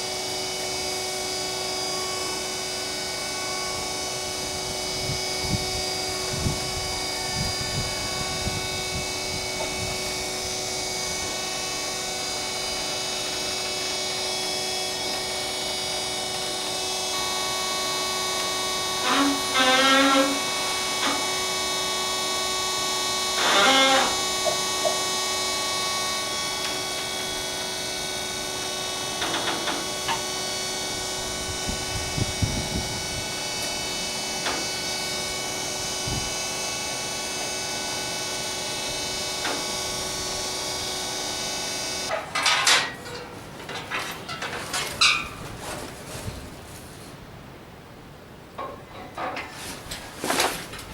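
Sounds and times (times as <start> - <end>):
saw motor whining: 0.0 - 43.2
saw squeal: 17.2 - 22.4, 23.0 - 27.0.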